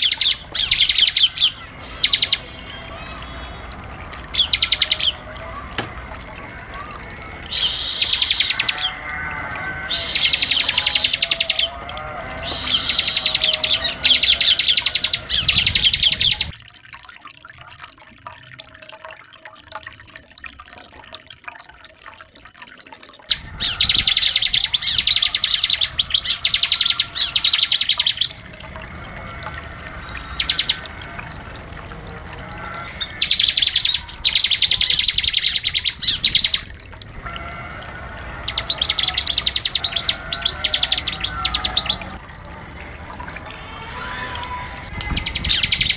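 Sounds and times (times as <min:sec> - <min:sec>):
bird chattering song: 0:00.0 - 0:03.5, 0:04.2 - 0:16.5, 0:23.3 - 0:28.6, 0:30.0 - 0:31.4, 0:32.6 - 0:36.7, 0:44.6 - 0:45.9.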